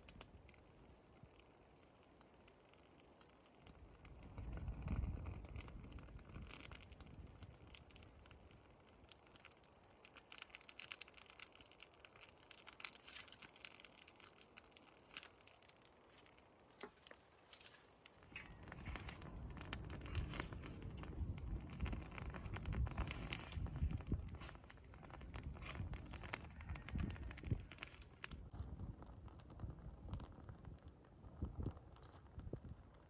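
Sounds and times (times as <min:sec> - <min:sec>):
burning straw crackling: 0:00.0 - 0:33.0
low rumble: 0:18.3 - 0:27.8.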